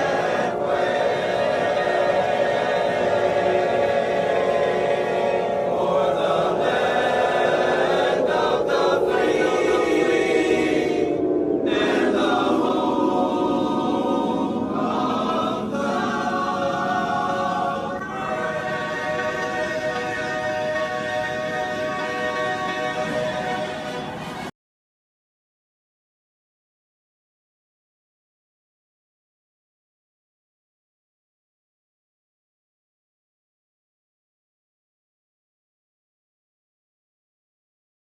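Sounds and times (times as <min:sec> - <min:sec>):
choir singing held chords: 0:00.0 - 0:24.5.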